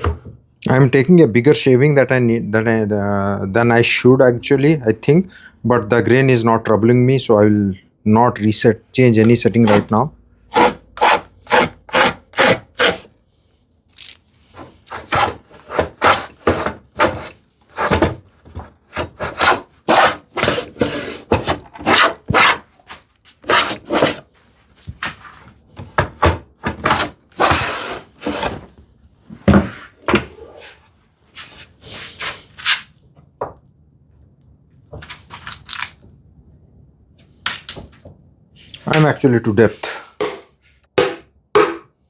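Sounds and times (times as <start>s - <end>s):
hand plane scraping wood: 9.6s - 9.9s, 10.5s - 13.1s, 14.6s - 18.2s, 18.9s - 22.6s, 23.4s - 24.2s, 26.8s - 28.6s.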